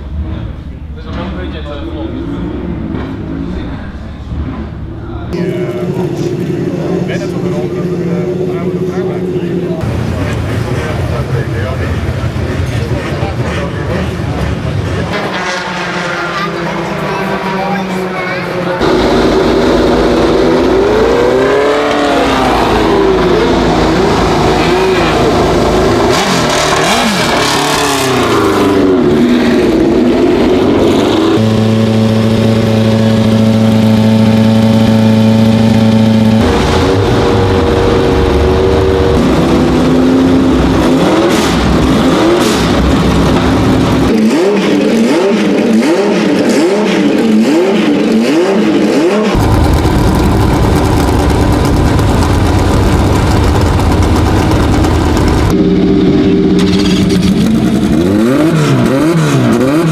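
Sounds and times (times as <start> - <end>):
racing car engines revving: 0.0 - 59.9.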